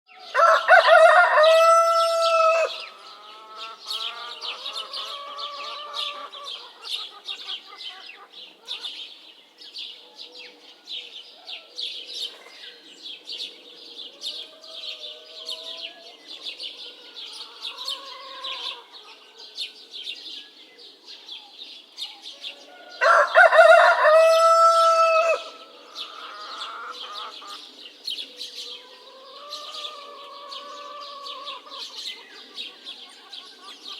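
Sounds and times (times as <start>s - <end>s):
small birds chirping: 0.1s - 33.9s
rooster crowing: 0.2s - 6.3s, 22.6s - 27.1s.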